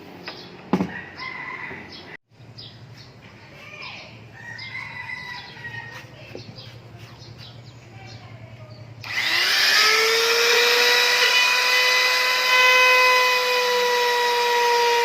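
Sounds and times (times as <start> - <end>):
birds chirping and calling: 0.2 - 9.1.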